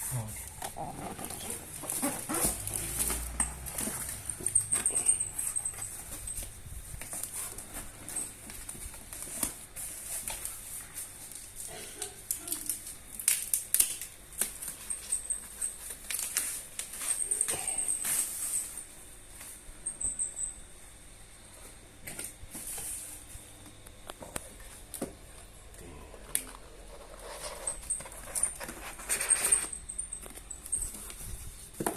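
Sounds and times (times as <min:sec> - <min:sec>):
cardboard and plastic rustling: 0:00.0 - 0:18.8, 0:26.2 - 0:31.9.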